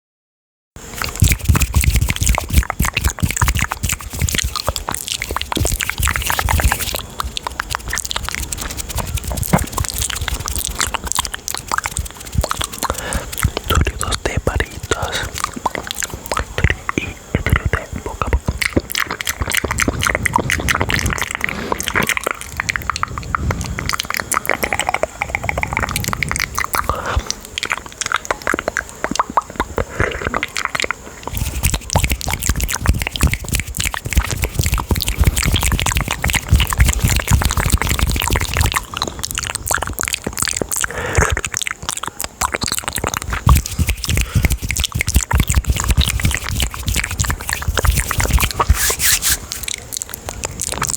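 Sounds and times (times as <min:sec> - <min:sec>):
wet mouth clicks and smacks: 0:00.8 - 0:50.9
hands rubbing microphone: 0:00.9 - 0:15.4, 0:43.4 - 0:49.7.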